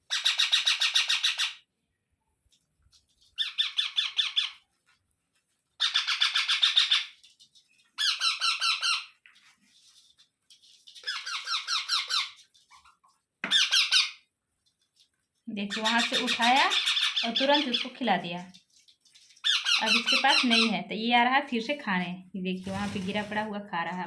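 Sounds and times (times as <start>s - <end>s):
parrots high-pitched pulsed calls: 0.1s - 1.6s, 3.4s - 4.6s, 5.8s - 7.2s, 8.0s - 9.2s, 11.0s - 12.8s, 13.5s - 14.2s, 15.8s - 18.0s, 19.2s - 20.7s.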